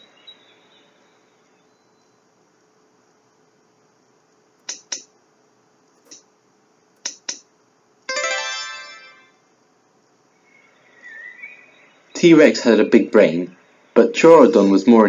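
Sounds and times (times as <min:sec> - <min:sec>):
short clicks: 0:04.6 - 0:05.1.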